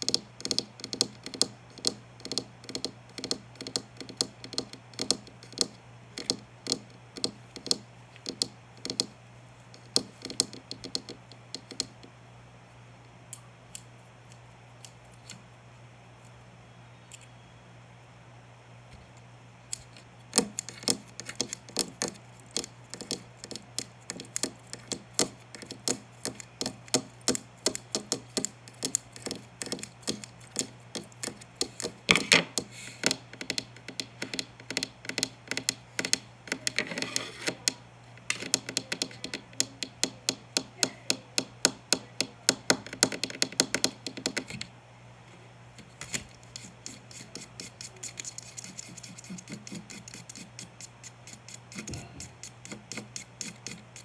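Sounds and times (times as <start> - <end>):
sharp taps and clicks: 0.0 - 9.1, 20.3 - 36.7, 37.4 - 44.6
faint steady hum: 0.0 - 54.0.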